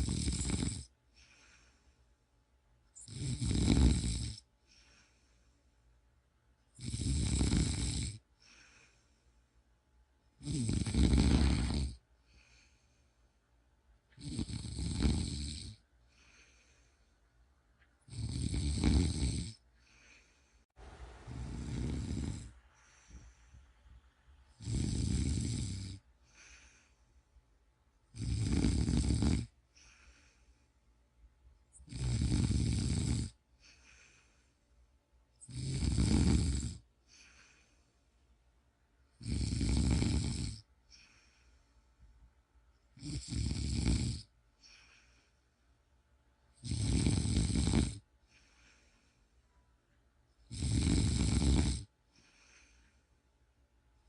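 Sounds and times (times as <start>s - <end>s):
person snoring: 0.0s - 1.7s, 3.0s - 5.2s, 6.8s - 9.0s, 10.4s - 12.8s, 14.2s - 16.9s, 18.1s - 20.4s, 21.2s - 23.4s, 24.5s - 27.0s, 28.1s - 30.4s, 31.7s - 34.3s, 35.4s - 37.6s, 39.2s - 41.3s, 43.0s - 45.1s, 46.6s - 48.9s, 50.4s - 52.9s
faint breathing: 1.0s - 2.4s, 4.4s - 6.0s, 8.2s - 9.8s, 11.3s - 13.6s, 15.9s - 17.5s, 19.5s - 28.0s, 29.4s - 31.0s, 33.3s - 35.0s, 36.8s - 38.4s, 40.6s - 42.2s, 44.5s - 45.9s, 48.1s - 49.7s, 51.9s - 53.3s.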